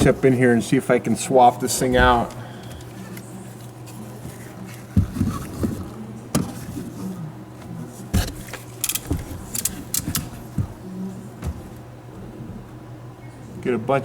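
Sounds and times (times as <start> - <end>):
steady low hum: 0.0 - 3.7
knocks and clunks in pickup bed: 1.8 - 2.4.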